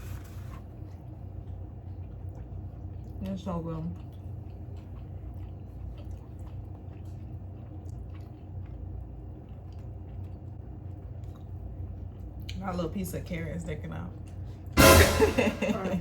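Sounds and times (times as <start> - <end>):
chewing food: 0.0 - 14.8
low hum: 14.8 - 16.0.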